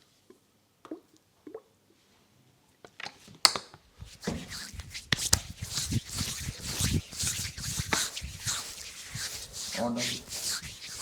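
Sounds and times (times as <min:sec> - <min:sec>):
hands rubbing and slapping skin: 0:04.0 - 0:11.0.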